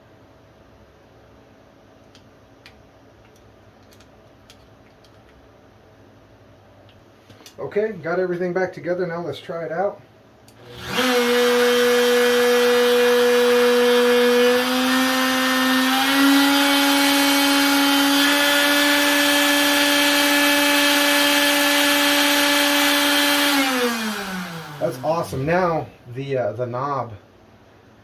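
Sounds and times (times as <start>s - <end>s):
router high whine: 10.5s - 25.9s.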